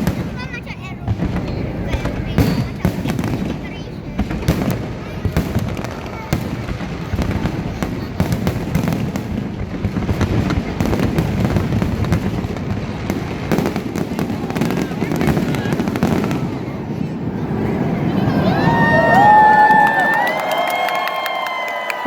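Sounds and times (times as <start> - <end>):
fireworks bangs and crackles: 0.0 - 21.5
crowd voices: 0.0 - 22.0.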